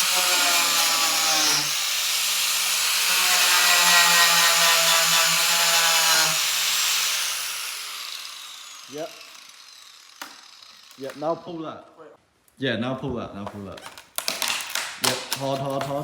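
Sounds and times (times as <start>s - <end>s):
power tool motor running: 1.6s - 11.0s.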